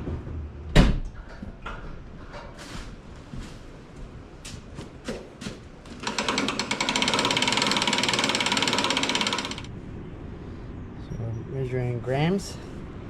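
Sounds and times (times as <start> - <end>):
seed drill mechanism rattling: 6.0 - 9.7.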